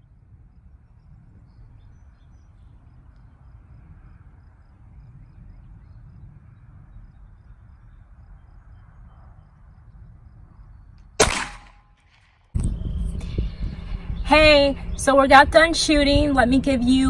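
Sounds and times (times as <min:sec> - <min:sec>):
faint low outdoor rumble: 0:00.0 - 0:12.0, 0:12.6 - 0:17.0
pistol gunshot: 0:11.2 - 0:12.2.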